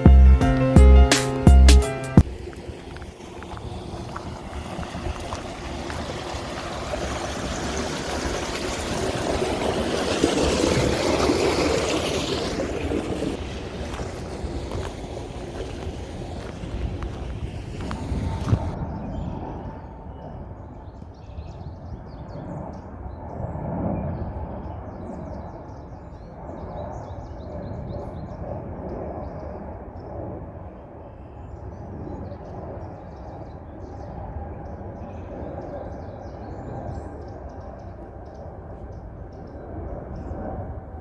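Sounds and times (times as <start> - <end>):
small birds chirping: 2.3 - 18.8.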